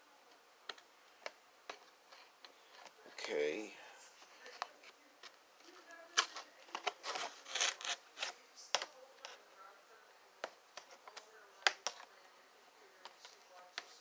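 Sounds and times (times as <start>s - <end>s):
clicks and taps: 0.3s - 3.4s
packaging crinkling: 5.7s - 8.4s.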